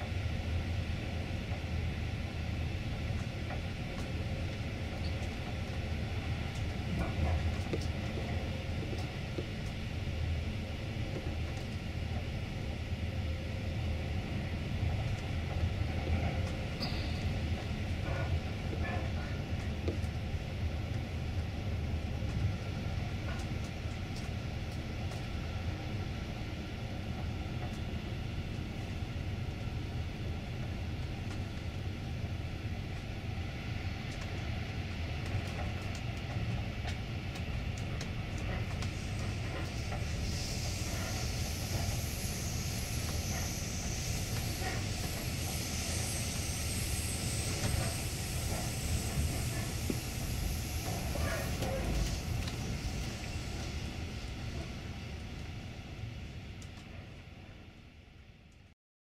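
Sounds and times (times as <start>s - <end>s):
freight train rumbling on rails: 0.0s - 58.7s
high hiss: 38.4s - 56.4s.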